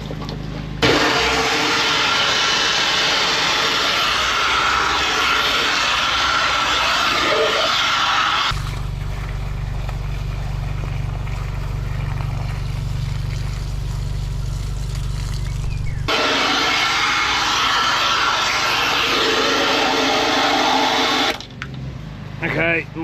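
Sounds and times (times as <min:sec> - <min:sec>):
dull low rumble: 0:08.5 - 0:16.2.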